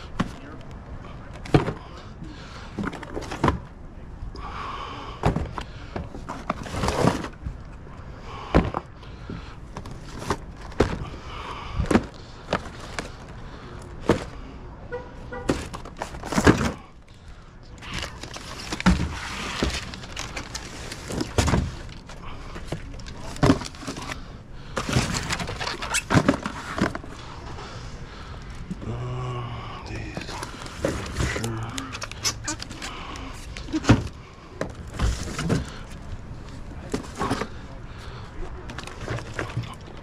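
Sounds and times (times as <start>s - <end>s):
packaging handled with clunks: 17.8s - 24.2s, 24.8s - 27.2s.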